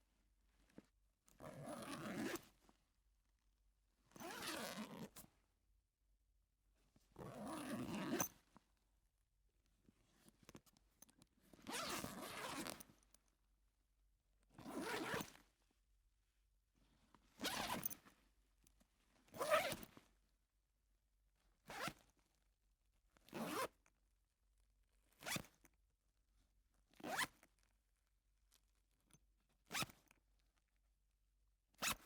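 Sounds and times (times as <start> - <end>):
backpack zipper zipping: 7.6 - 8.3.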